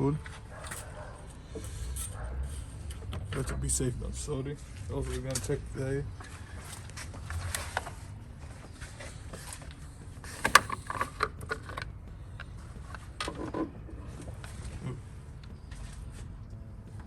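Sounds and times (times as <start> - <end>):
clicks and creaks of hand work: 8.8 - 15.0.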